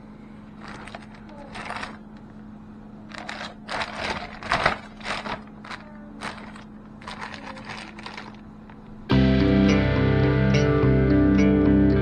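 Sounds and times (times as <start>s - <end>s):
faint steady hum: 0.0s - 12.0s
rustling scraping and knocking: 0.5s - 2.1s, 3.1s - 8.8s.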